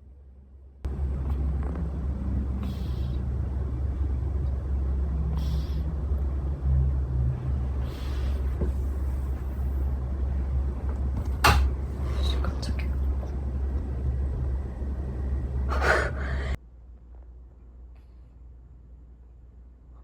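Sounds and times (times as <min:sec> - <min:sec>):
cat purring rumble: 0:00.9 - 0:16.6
soft breathy hiss: 0:02.6 - 0:03.2, 0:05.3 - 0:05.9.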